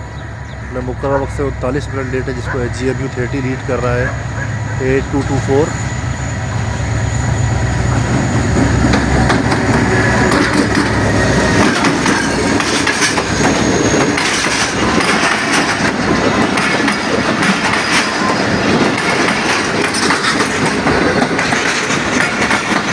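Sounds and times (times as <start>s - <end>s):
locomotive engine drone: 0.0s - 22.9s
train wheels clattering over rail joints: 5.2s - 22.9s.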